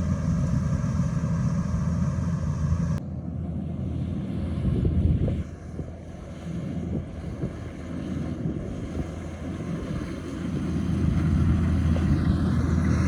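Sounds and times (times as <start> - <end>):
harvester engine droning: 0.0 - 13.0.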